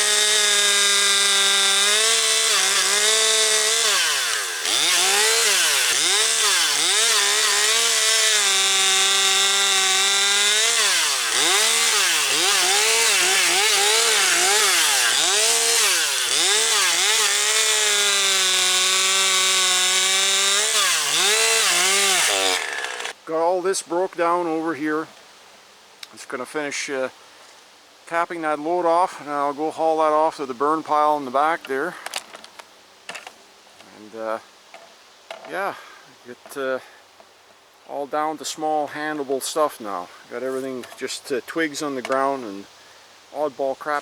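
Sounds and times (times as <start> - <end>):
chainsaw revving while cutting: 0.0 - 23.2.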